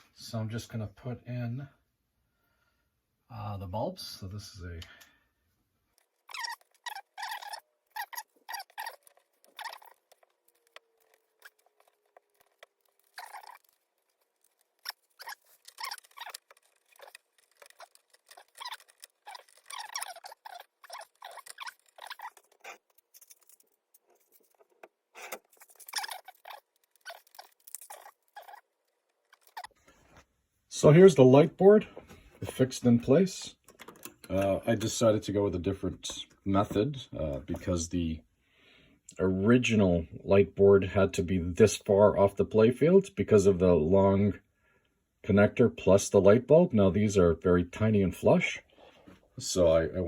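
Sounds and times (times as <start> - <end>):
small clicks and scratches: 5.9 - 30.3, 32.0 - 37.8.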